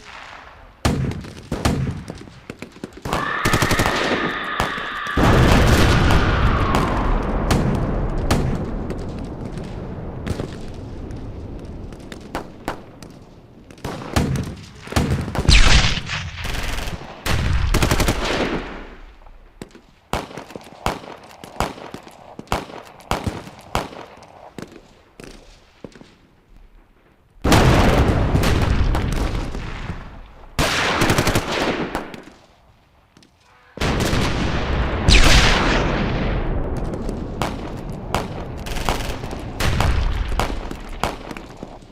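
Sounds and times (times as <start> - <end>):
heavy explosions: 3.1 - 12.7
rifle shots: 13.8 - 19.1, 27.5 - 32.4, 33.8 - 41.7.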